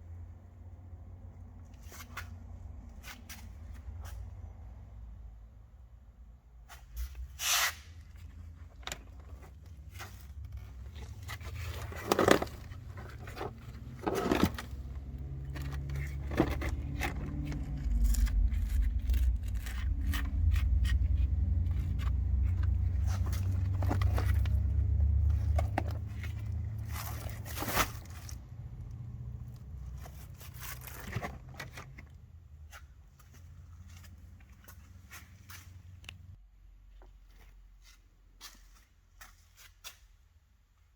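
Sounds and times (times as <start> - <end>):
low rumble: 14.6 - 27.4.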